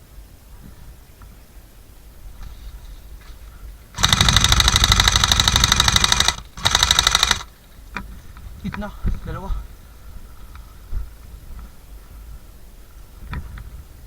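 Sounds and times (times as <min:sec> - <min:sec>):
airsoft gun firing full auto: 0:04.0 - 0:07.5.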